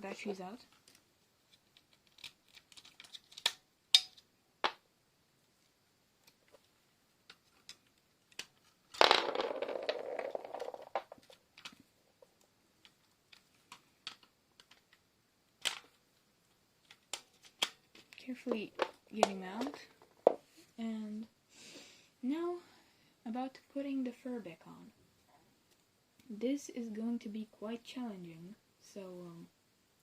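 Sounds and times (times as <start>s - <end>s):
scraping and rattling: 8.4s - 12.3s.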